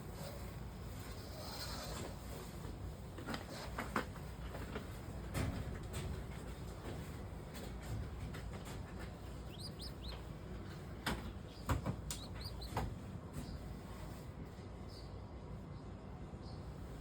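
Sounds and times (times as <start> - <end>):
low background noise: 0.0 - 17.0
small bird chirping: 9.0 - 13.6.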